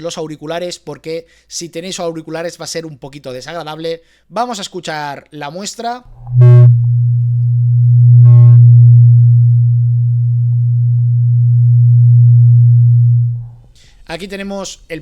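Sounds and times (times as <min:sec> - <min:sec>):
microphone feedback howl: 0:06.1 - 0:13.6.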